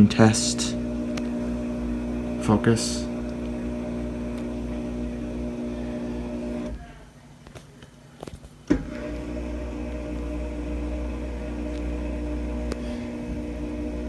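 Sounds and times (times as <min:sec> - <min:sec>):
dishwasher drain pump humming: 0:00.0 - 0:06.9, 0:08.7 - 0:14.0
faint clicks: 0:03.2 - 0:03.6.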